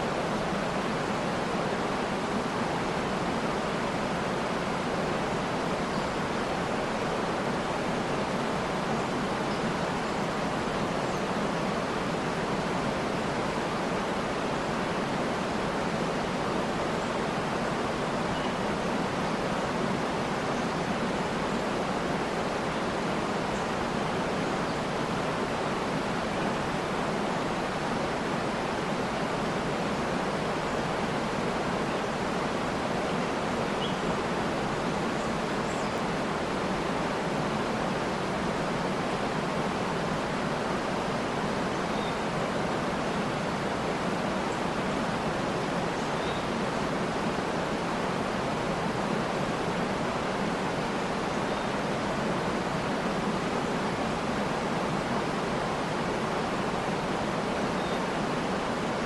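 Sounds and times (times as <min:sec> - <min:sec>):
waterfall rushing: 0:00.0 - 0:59.0
faint bird chirps: 0:18.3 - 0:18.8, 0:33.1 - 0:34.1, 0:41.8 - 0:42.7, 0:46.0 - 0:46.6, 0:57.6 - 0:58.2.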